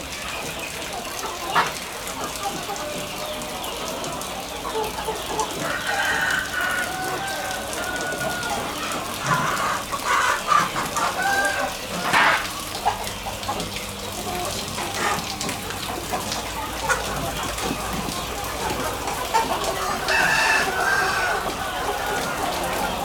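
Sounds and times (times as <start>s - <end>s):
chickens clucking: 0.0s - 23.0s
roosters crowing: 5.4s - 12.6s, 17.7s - 23.0s.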